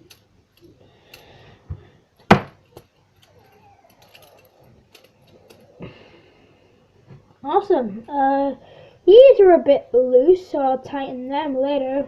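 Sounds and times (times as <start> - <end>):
metal comb handles clinking: 0.0 - 1.4, 2.6 - 5.8.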